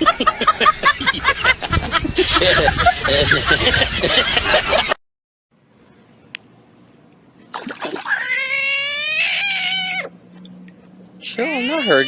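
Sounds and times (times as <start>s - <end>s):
cat meowing: 11.4s - 12.0s.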